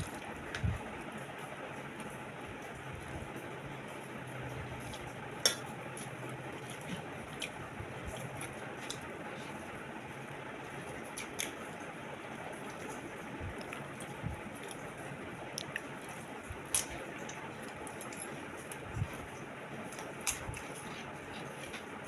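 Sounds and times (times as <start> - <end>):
wet squishing of eating: 0.0 - 1.2, 3.8 - 22.0.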